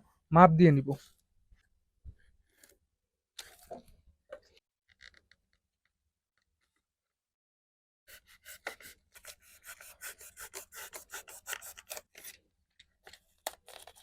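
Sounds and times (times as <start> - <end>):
foam scraped by hand: 8.1 - 11.9.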